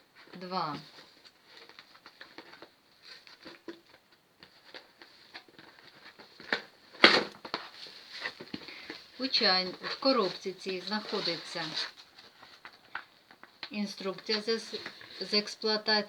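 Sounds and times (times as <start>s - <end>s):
cardboard box scrape: 9.4s - 12.0s.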